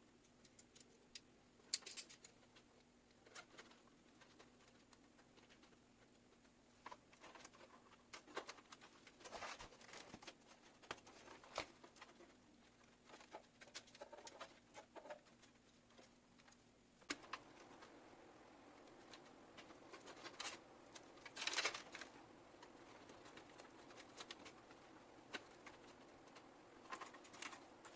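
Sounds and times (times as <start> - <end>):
low steady hum: 0.0 - 27.9
clicks and taps of handling components: 0.2 - 3.8.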